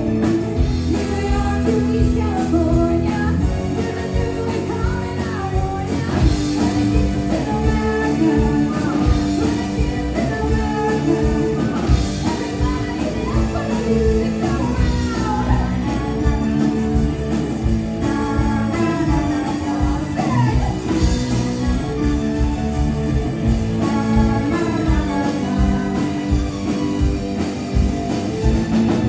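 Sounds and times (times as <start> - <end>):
bass guitar: 0.0 - 29.0
drum kit: 0.0 - 29.0
electric guitar: 0.0 - 29.0
keyboard: 0.0 - 29.0
women singing: 0.8 - 22.6, 23.5 - 27.0.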